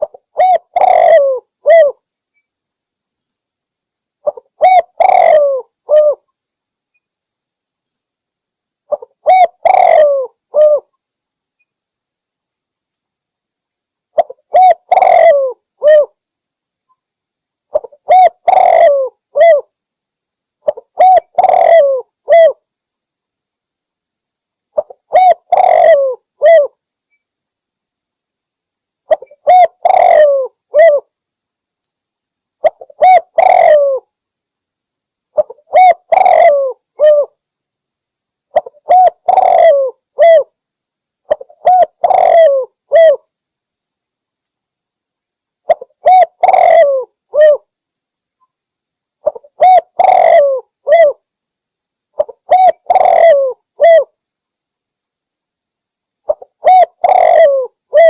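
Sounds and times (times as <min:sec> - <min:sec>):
dove cooing: 0:00.0 - 0:02.0, 0:04.2 - 0:06.2, 0:08.9 - 0:10.9, 0:14.2 - 0:16.2, 0:17.7 - 0:19.7, 0:20.6 - 0:22.6, 0:24.8 - 0:26.8, 0:29.1 - 0:31.1, 0:32.6 - 0:34.1, 0:35.4 - 0:37.4, 0:38.6 - 0:40.5, 0:41.3 - 0:43.2, 0:45.7 - 0:47.7, 0:49.2 - 0:51.2, 0:52.2 - 0:54.1, 0:56.3 - 0:58.0.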